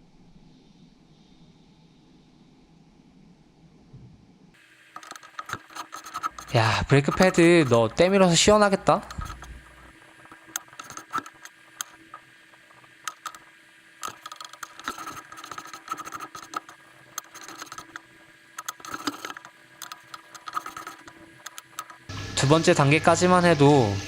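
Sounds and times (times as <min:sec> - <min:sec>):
faint steady hum: 0:00.0 - 0:24.0
brake pad scraping: 0:05.0 - 0:13.4, 0:14.0 - 0:18.0, 0:18.6 - 0:22.1.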